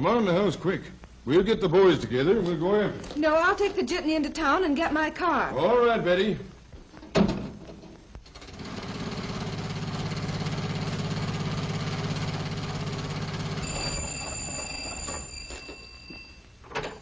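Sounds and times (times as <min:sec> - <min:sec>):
high steady ringing: 0:13.4 - 0:17.0.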